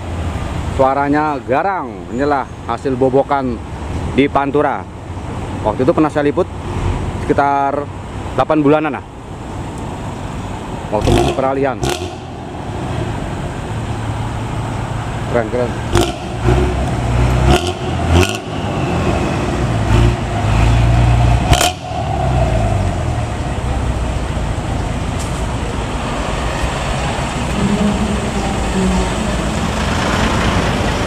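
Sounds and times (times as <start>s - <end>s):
bus diesel engine growling: 0.0s - 31.0s
sharp exhaust blasts: 10.7s - 31.0s.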